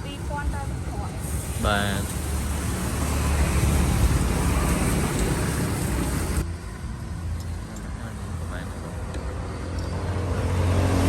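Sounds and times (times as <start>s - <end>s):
road traffic passing: 0.0s - 11.0s.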